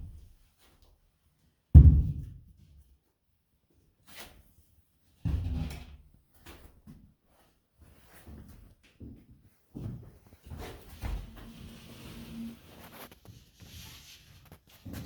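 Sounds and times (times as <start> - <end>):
short scrape: 11.1 - 14.6.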